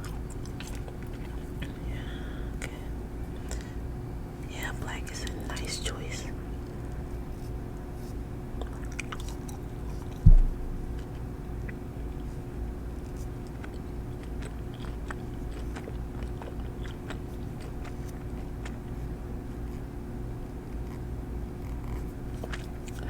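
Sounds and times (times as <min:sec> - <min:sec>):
steady low hum: 0:00.0 - 0:23.0
dull thump: 0:10.2 - 0:10.9.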